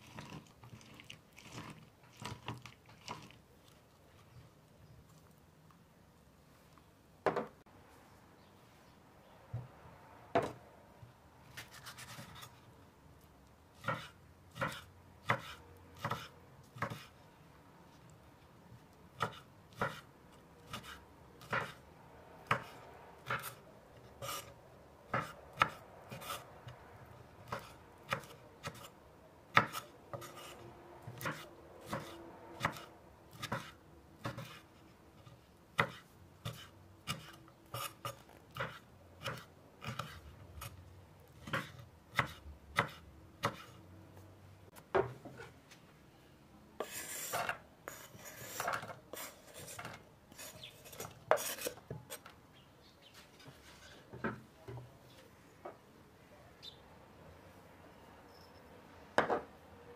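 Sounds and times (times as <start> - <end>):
scraping rustle: 53.1 - 54.1.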